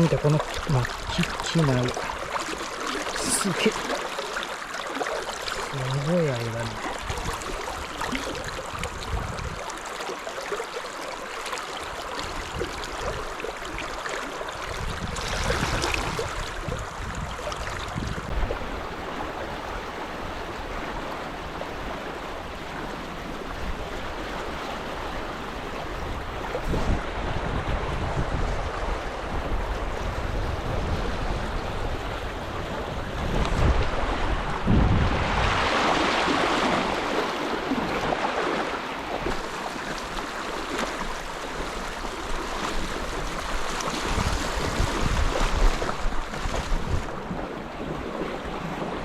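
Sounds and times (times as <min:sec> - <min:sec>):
river water rushing: 0:00.0 - 0:17.8, 0:28.6 - 0:49.0
wind rumbling on microphone: 0:05.4 - 0:10.0, 0:11.8 - 0:49.0.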